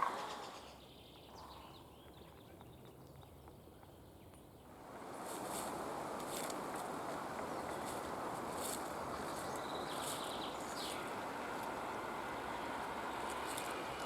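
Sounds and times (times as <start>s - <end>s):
songbirds chirping: 0.0s - 14.0s
steady background hiss: 4.7s - 14.0s.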